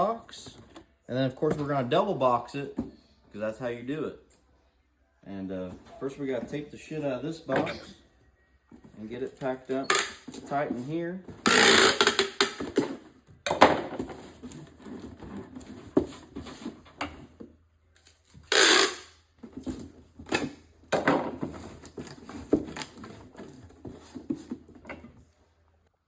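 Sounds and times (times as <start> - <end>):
packing tape ripping off roll: 11.4 - 12.9, 18.0 - 19.2
cardboard rustling and knocking: 12.5 - 17.5, 20.9 - 25.2.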